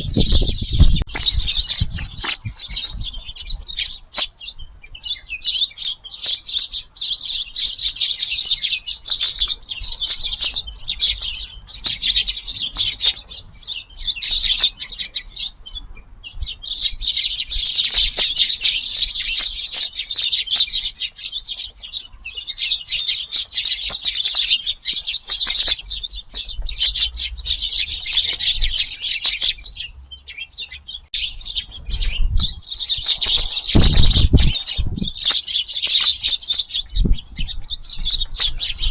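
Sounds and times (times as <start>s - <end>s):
strong low rumble: 0.0s - 3.6s, 31.3s - 35.2s
sparrows chattering and chirping: 0.0s - 38.9s.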